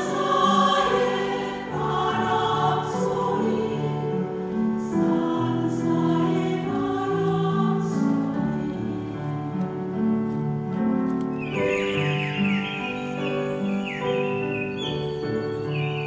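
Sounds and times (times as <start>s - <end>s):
choir singing held chords: 0.0s - 10.2s, 11.3s - 16.0s
high bird-like chirps: 11.3s - 16.0s.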